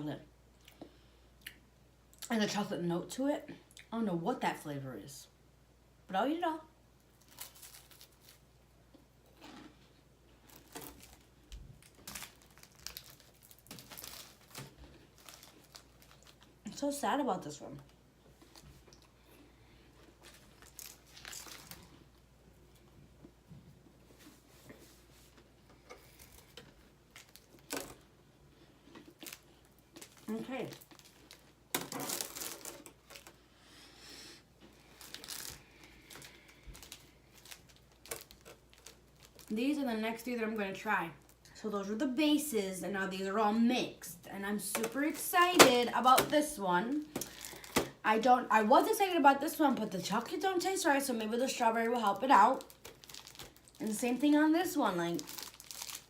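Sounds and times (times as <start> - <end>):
plastic packaging crinkling: 7.1 - 8.6, 10.4 - 16.8, 20.0 - 22.8, 24.2 - 28.1, 28.8 - 33.5, 34.6 - 41.5, 44.7 - 48.0, 50.2 - 56.0.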